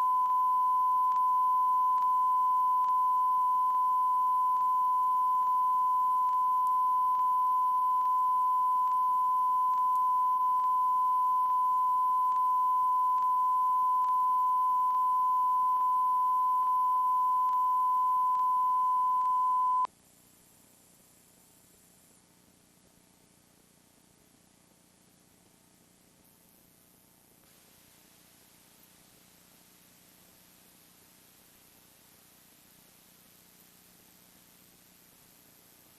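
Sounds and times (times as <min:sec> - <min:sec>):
faint regular clicks: 0:00.0 - 0:15.1
faint high whine: 0:00.0 - 0:19.9
high-pitched beep tone: 0:00.0 - 0:19.9
faint tape hiss: 0:00.0 - 0:35.9.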